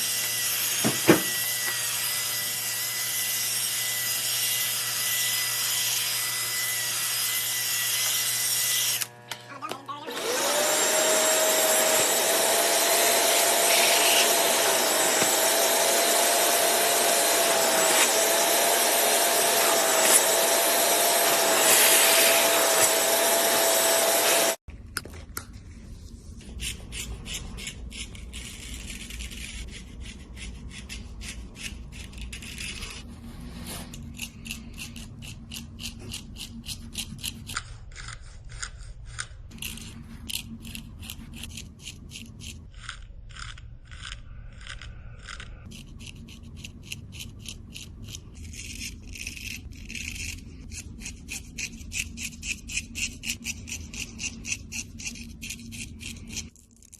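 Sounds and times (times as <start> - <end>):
motorised tool hissing and humming: 10.1 - 24.6.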